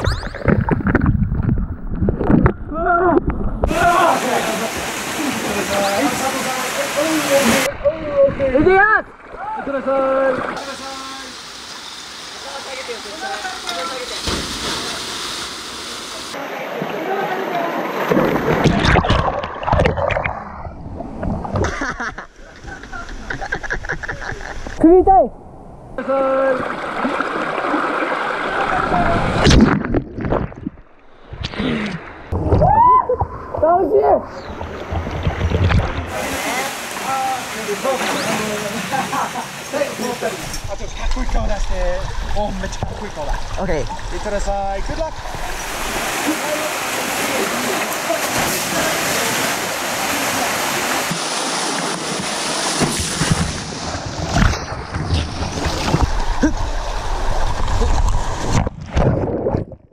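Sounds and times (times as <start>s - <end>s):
rushing stream water: 3.7s - 21.6s, 26.4s - 31.4s, 33.2s - 59.6s
water splashes and knocks: 13.6s - 15.7s, 18.0s - 20.4s, 34.6s - 59.9s.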